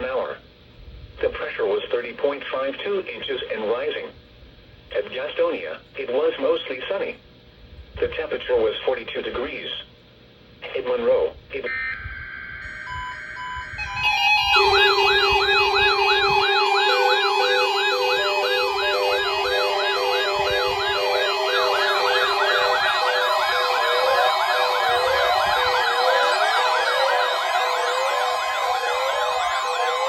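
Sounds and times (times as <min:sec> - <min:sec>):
steady low tone: 0:11.6 - 0:26.0
short beep: 0:11.7 - 0:23.0
electronic sirens yelping: 0:11.7 - 0:30.0.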